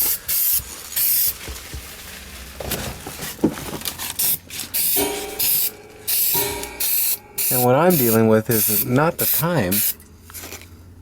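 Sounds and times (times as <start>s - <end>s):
spray paint can hissing: 0.0s - 1.3s, 4.2s - 10.0s.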